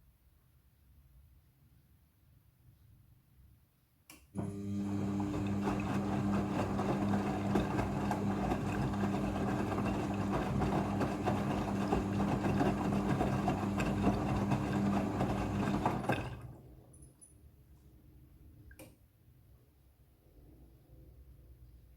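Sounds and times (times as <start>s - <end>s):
washing machine humming and swishing: 4.4s - 16.8s.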